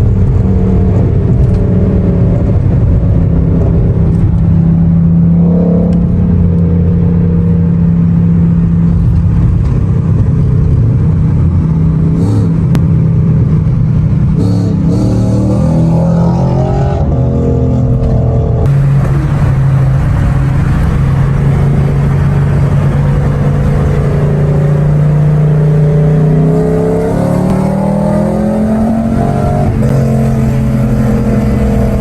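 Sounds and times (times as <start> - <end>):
car engine deep drone: 0.0 - 32.0.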